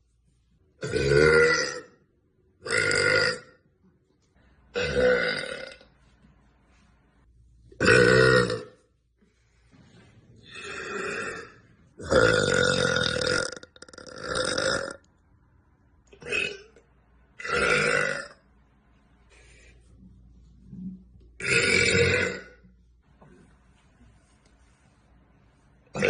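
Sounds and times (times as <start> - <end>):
woman burping: 0.8 - 1.9, 4.7 - 5.8, 10.6 - 15.0, 16.2 - 16.8, 17.4 - 18.4, 21.4 - 22.6.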